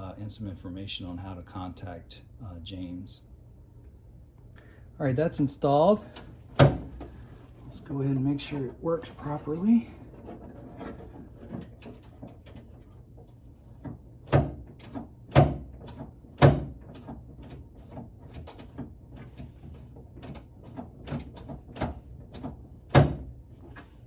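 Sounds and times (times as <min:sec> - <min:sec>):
door latch clunks: 0:06.2 - 0:07.1.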